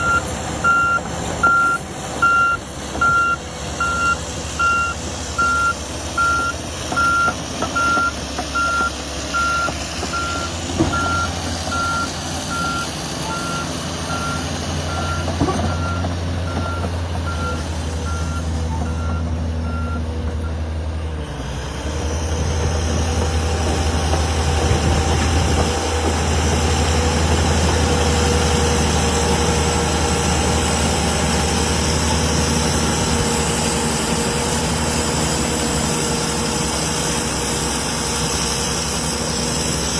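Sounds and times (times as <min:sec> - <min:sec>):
reversing alarm beeping: 0:00.0 - 0:20.6
diesel engine running: 0:00.0 - 0:39.9.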